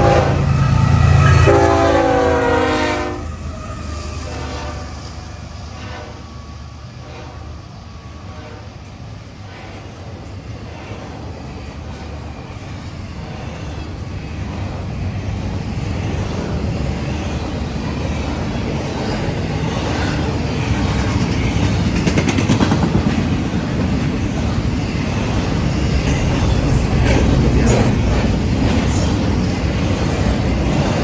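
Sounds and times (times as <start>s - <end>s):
train clicking and clatter: 0.0s - 31.0s
locomotive engine rumble: 12.2s - 31.0s.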